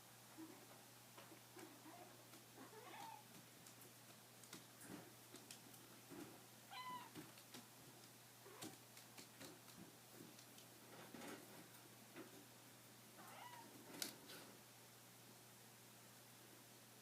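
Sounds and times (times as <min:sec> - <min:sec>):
faint taps and rustles: 0:07.0 - 0:12.5.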